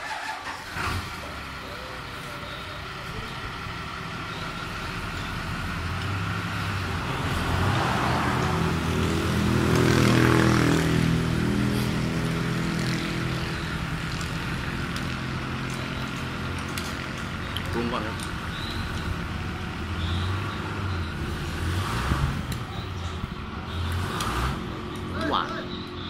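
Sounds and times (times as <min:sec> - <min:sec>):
vehicle engine passing by: 0:00.0 - 0:26.0.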